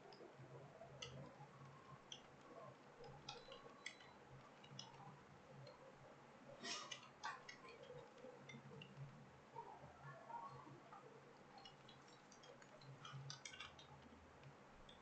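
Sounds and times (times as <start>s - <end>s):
low steady hum: 0.0s - 15.0s
computer keyboard keys clicking: 2.0s - 5.8s, 11.6s - 15.0s.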